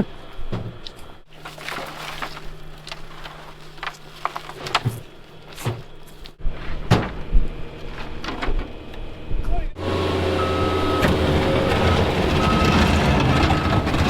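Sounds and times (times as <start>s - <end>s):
low engine hum: 0.0s - 14.0s.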